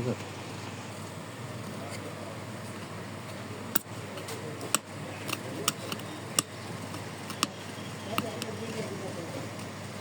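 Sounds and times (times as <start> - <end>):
steady background hum: 0.0 - 10.0
clicks of small hard parts: 3.8 - 8.8.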